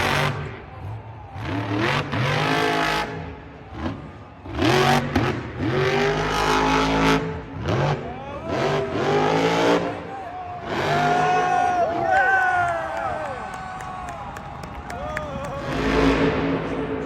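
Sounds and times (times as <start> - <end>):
vehicle engine revving hard: 1.4 - 11.4, 15.6 - 17.0.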